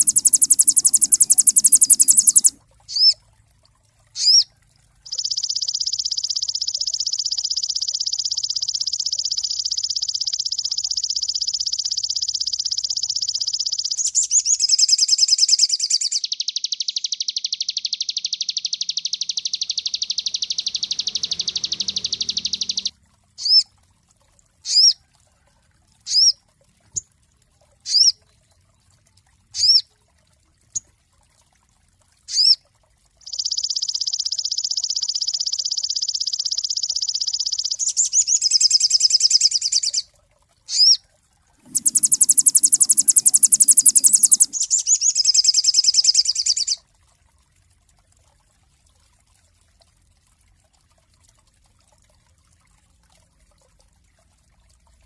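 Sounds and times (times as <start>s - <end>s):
songbird fast high trill: 0.0s - 3.2s, 13.9s - 23.6s, 37.4s - 40.0s, 41.6s - 46.8s.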